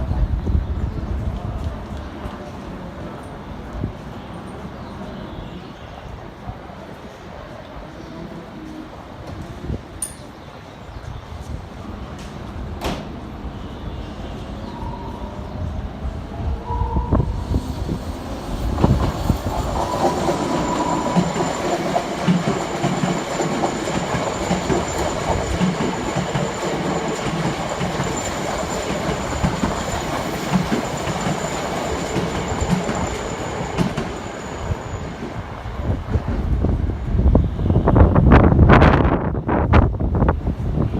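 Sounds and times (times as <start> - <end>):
high-pitched squeal: 16.6 - 35.4
train wheels clattering: 18.4 - 34.8.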